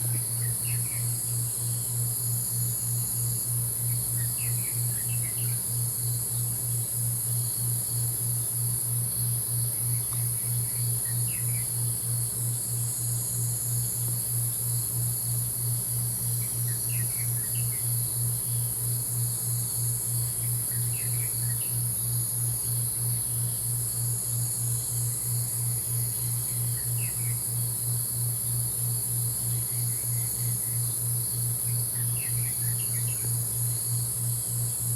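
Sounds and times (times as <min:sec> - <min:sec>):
insects chirring: 0:00.0 - 0:34.9
low pulsing hum: 0:00.0 - 0:34.9.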